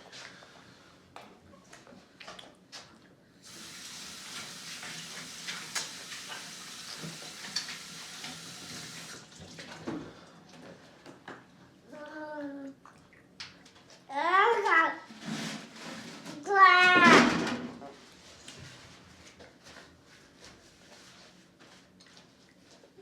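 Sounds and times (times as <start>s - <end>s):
water running from a tap: 3.4s - 9.8s.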